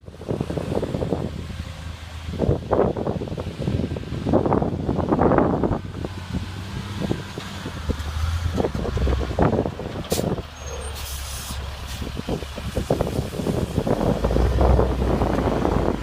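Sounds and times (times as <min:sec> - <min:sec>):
vehicle engine rumbling: 0:00.0 - 0:16.0
short hiss: 0:10.9 - 0:12.0.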